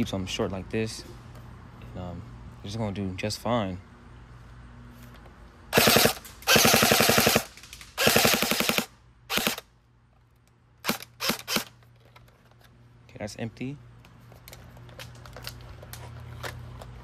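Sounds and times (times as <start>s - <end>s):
electric airsoft gun bursts: 5.7s - 9.7s, 10.8s - 11.8s.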